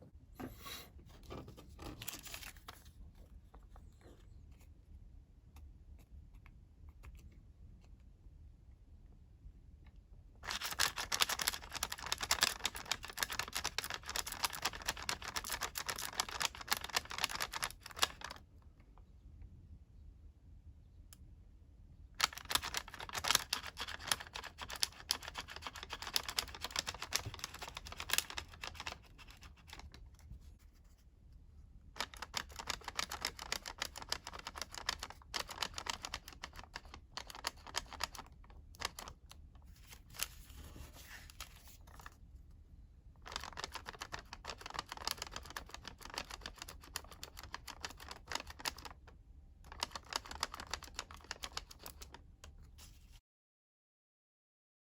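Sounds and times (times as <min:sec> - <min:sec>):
paper being folded and crinkling: 0:01.4 - 0:04.0, 0:22.2 - 0:30.8, 0:32.0 - 0:38.2, 0:38.8 - 0:42.2, 0:49.7 - 0:53.2.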